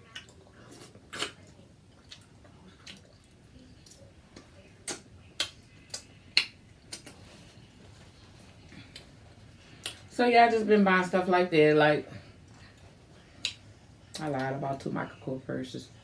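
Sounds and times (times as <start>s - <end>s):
eating clicks and smacks: 1.1s - 7.2s, 13.4s - 14.9s.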